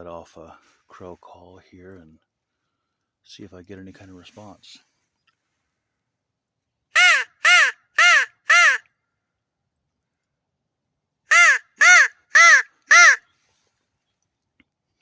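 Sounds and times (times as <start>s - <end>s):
crow call caws: 11.3s - 13.3s.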